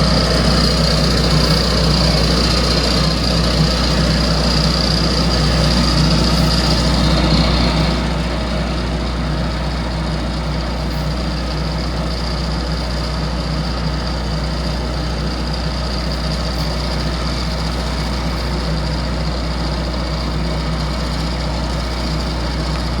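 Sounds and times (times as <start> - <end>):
heavy machinery engine drone: 0.0 - 23.0
high whine: 0.0 - 23.0.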